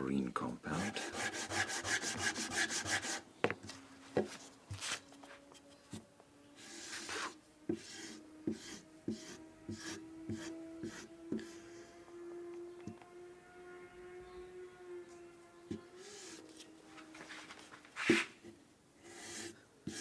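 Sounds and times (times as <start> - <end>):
short scraping strokes on strop: 6.6 - 12.0, 15.7 - 20.0
scrubbing on leather strop: 17.2 - 18.4.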